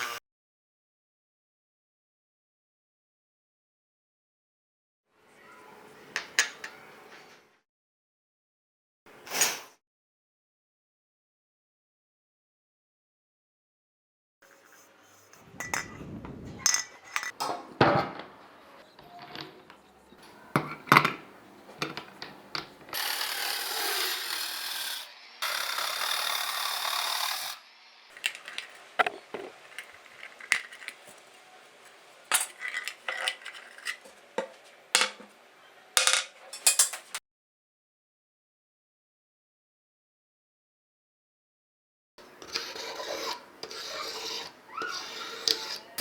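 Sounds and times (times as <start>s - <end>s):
metal tools clattering: 32.3s - 34.0s, 36.0s - 37.2s.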